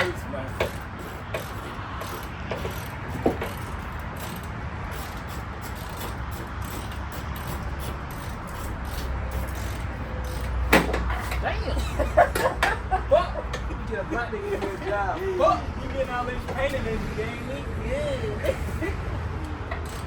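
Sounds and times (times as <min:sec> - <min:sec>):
ratchet clicking: 0:00.0 - 0:13.8, 0:18.5 - 0:20.0.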